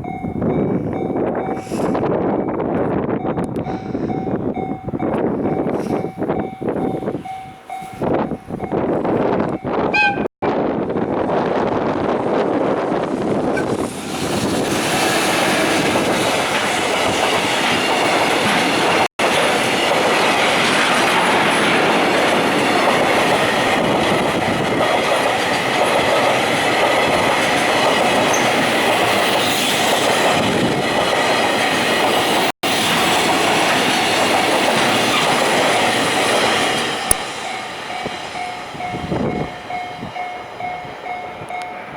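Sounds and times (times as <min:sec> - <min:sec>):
level-crossing warning bell: 0:00.0 - 0:10.3, 0:15.4 - 0:29.4, 0:30.2 - 0:34.8, 0:35.8 - 0:41.9
train wheels clattering over rails: 0:13.1 - 0:40.0.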